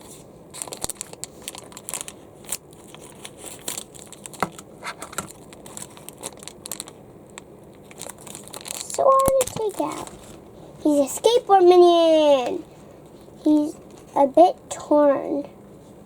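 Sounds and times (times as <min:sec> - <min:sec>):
plastic wrapper crinkling: 0:00.5 - 0:11.8.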